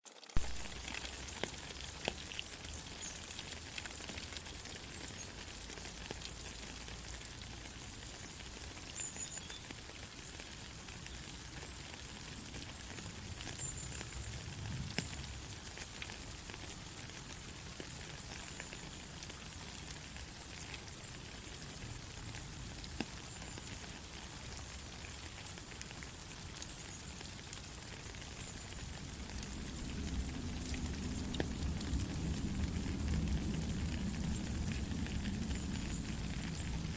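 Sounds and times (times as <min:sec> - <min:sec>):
rain falling: 0:00.1 - 0:36.9
low rumble: 0:28.9 - 0:36.9.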